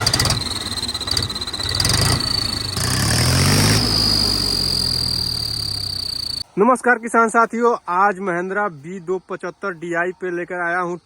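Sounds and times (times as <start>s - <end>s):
high exhaust whistle: 0.0s - 6.4s
tractor diesel engine revving: 0.0s - 6.4s.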